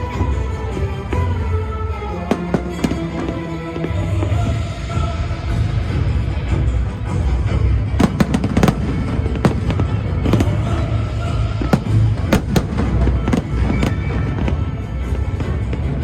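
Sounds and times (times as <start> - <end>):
loud music: 0.0 - 16.0
fireworks bangs: 2.3 - 5.0, 8.0 - 16.0.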